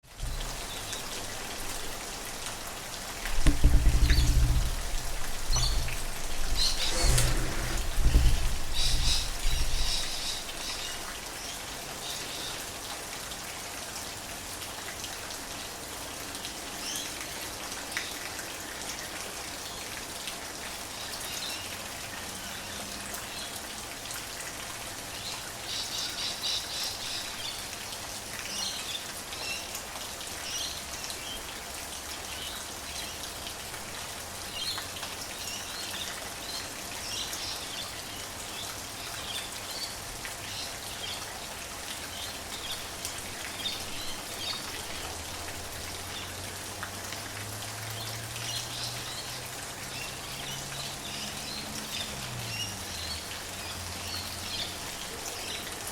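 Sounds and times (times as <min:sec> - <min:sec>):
rain falling: 0:00.0 - 0:55.9
birds chirping: 0:03.2 - 0:11.0.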